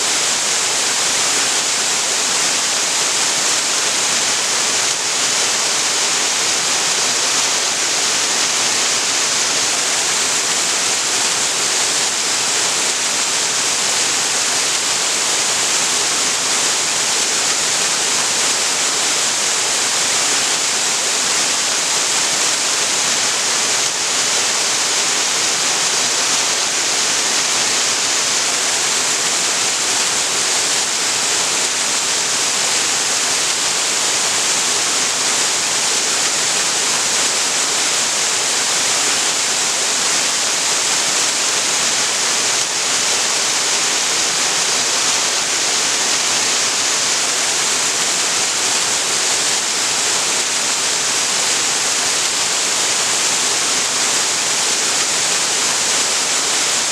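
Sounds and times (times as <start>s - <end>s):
waterfall pouring into creek: 0.0s - 56.9s.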